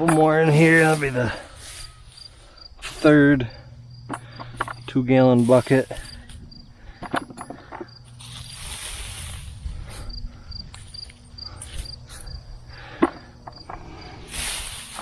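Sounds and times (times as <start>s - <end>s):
insect chirping: 0.4s - 15.0s
hay rustling: 8.2s - 9.7s.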